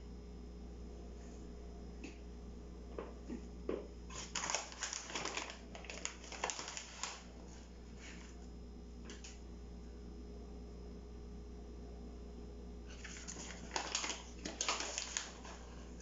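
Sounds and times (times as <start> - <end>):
kitchen things rustling and clicking: 4.1 - 7.3, 12.9 - 16.0
crinkling: 4.1 - 8.4, 12.9 - 16.0.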